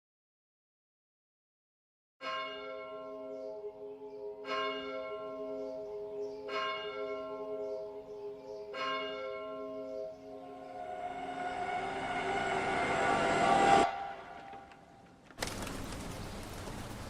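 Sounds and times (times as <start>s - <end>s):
sustained low tone: 9.7s - 15.0s.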